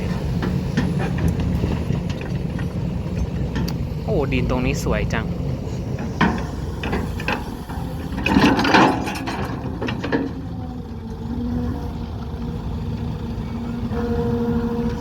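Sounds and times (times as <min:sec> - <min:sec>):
metal clanks of excavator bucket: 0:00.0 - 0:03.9, 0:05.8 - 0:10.8
excavator engine running: 0:00.0 - 0:15.0.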